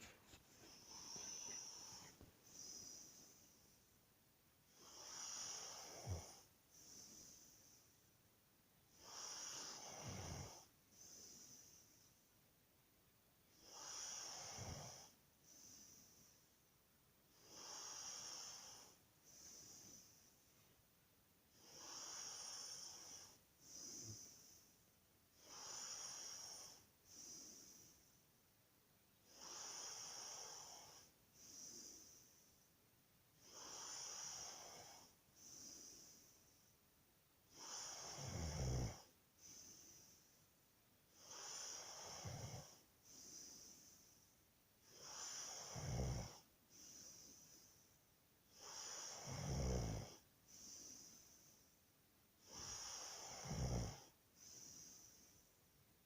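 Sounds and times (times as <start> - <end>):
person snoring: 0.6 - 3.6, 4.7 - 7.6, 9.0 - 11.8, 13.6 - 16.2, 17.3 - 20.1, 21.6 - 24.5, 29.3 - 32.3, 33.4 - 36.3, 37.5 - 40.1, 41.2 - 44.0, 44.9 - 47.5, 48.5 - 51.3, 52.4 - 55.4.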